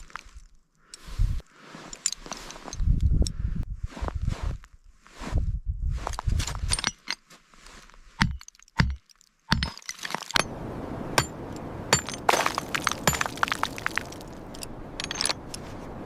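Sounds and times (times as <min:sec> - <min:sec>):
ice clinking and cracking: 0:08.4 - 0:10.5, 0:11.9 - 0:15.4.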